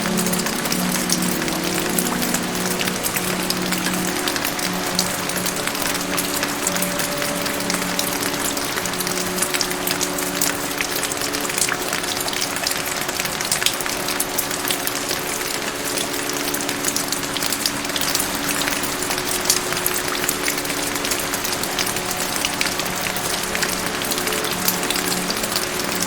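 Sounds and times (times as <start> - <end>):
rain patter: 0.0 - 26.0.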